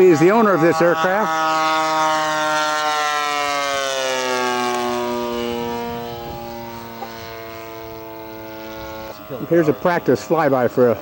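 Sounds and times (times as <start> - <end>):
model plane engine drone passing: 0.0 - 11.0.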